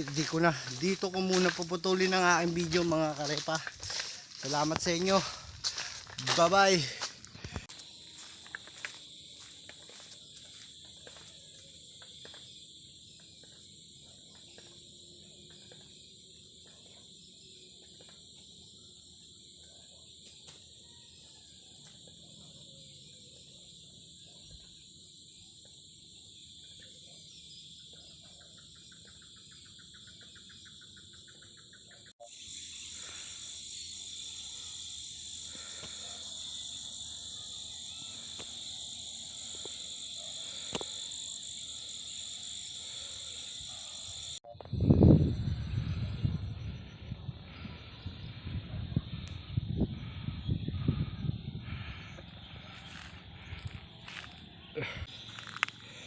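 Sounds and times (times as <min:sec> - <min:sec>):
crickets and insects chorus: 0:00.0 - 0:56.0
high-pitched pulsing insect call: 0:00.0 - 0:56.0.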